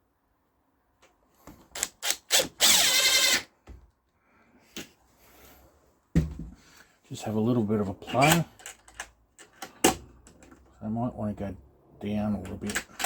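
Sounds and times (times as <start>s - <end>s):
power drill-driver driving screw: 1.8s - 3.5s.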